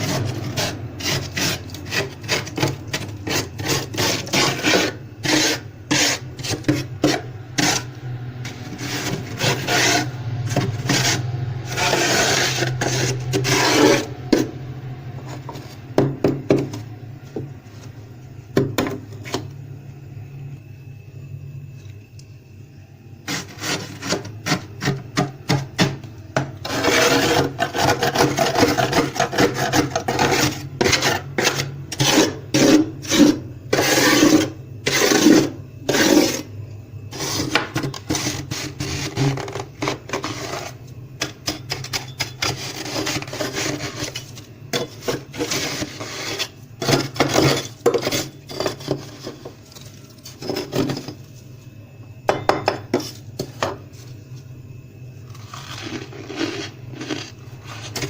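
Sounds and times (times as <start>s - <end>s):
frost being scraped: 0.0s - 14.1s, 23.3s - 25.0s, 26.6s - 36.5s, 41.5s - 49.3s, 55.3s - 58.0s.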